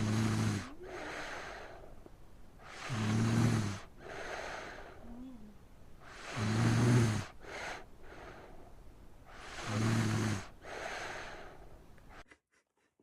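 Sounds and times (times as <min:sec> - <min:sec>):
child snoring: 0:00.0 - 0:01.9, 0:02.6 - 0:08.7, 0:09.3 - 0:11.6
breathy out-breath: 0:00.0 - 0:02.0, 0:03.8 - 0:05.2, 0:07.2 - 0:12.2.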